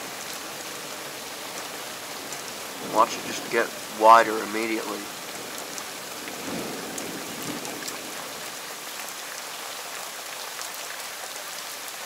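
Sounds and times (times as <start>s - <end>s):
heavy rain pouring: 0.0s - 12.0s
rain drop ticks: 2.3s - 8.0s.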